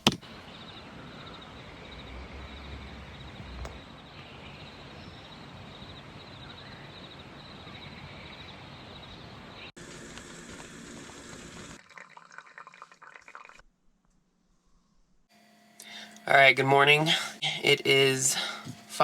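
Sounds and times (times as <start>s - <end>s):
insects chirping: 0.0s - 9.4s.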